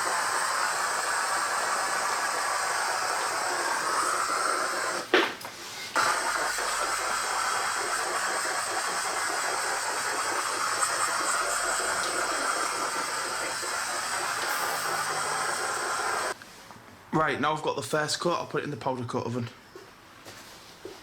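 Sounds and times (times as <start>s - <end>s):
powder spray gun hissing: 0.0s - 5.3s, 6.0s - 16.4s.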